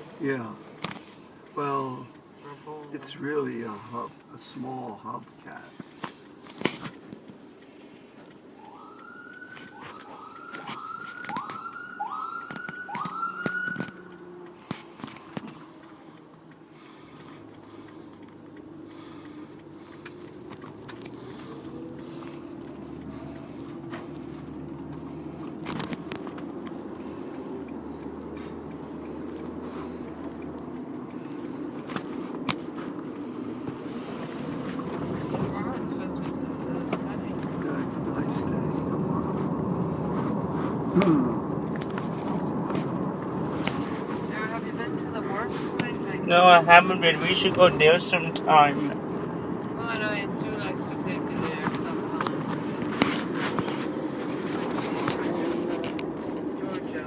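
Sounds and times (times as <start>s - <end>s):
car cabin road and engine rumble: 0.0s - 57.0s
light clicks and ticks: 0.0s - 57.0s
siren rising whoops: 8.6s - 14.1s.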